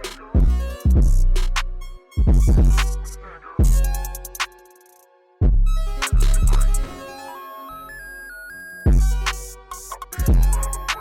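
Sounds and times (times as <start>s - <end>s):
hip hop beat: 0.0s - 8.0s, 8.8s - 11.0s
synth melody: 5.6s - 11.0s.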